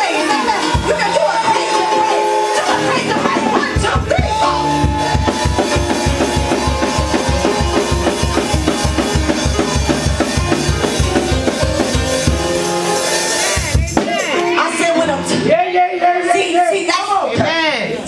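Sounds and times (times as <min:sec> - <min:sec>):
keyboard chords: 0:00.0 - 0:18.0
fast bass drum beat: 0:00.6 - 0:01.8, 0:02.8 - 0:12.7, 0:13.4 - 0:15.4.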